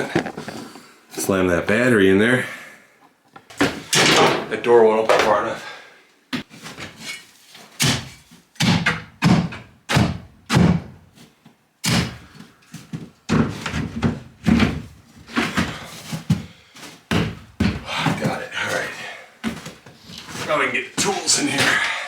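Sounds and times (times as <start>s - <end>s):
door banging and thudding: 3.6s - 5.4s, 7.8s - 11.0s.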